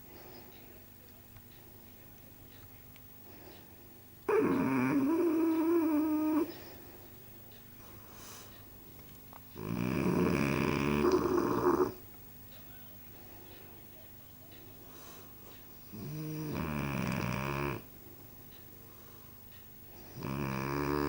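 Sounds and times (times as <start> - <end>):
dog snoring loudly: 4.3 - 6.5, 9.6 - 12.0, 15.9 - 17.9, 20.1 - 21.0.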